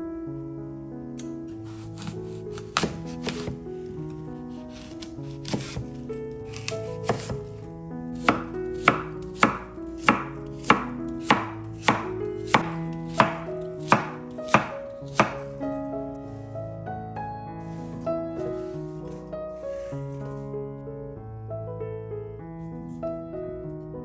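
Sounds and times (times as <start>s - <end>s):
background music: 0.0s - 24.0s
knife chopping on cutting board: 1.6s - 3.7s, 4.7s - 7.6s, 8.2s - 15.5s.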